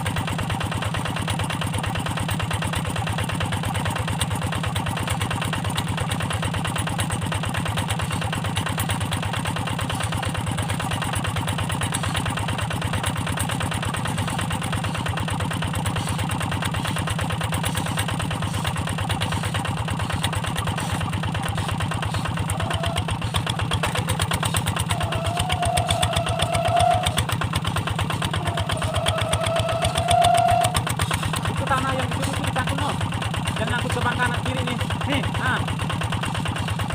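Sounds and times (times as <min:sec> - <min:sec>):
diesel engine running: 0:00.0 - 0:36.9
wavering higher tone: 0:24.9 - 0:27.2, 0:28.4 - 0:30.8.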